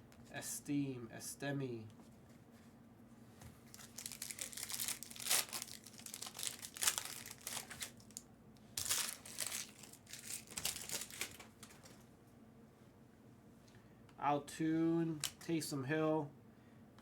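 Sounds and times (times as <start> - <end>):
wrapper crinkling and tearing: 3.6 - 8.2, 8.8 - 11.8.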